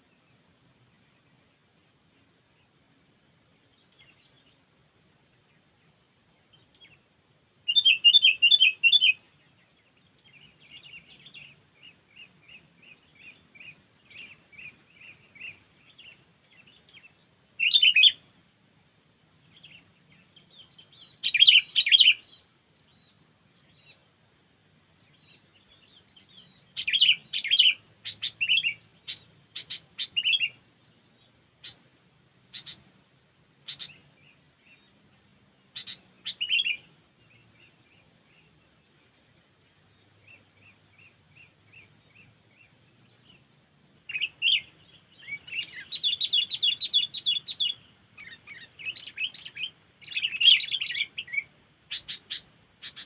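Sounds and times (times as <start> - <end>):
bird chirps: 7.6 - 18.3, 19.4 - 24.0, 25.0 - 31.9, 32.5 - 32.9, 33.6 - 53.0
bird rapid chattering: 26.8 - 30.5, 32.5 - 32.8, 33.6 - 34.0, 35.8 - 36.8, 44.1 - 53.0.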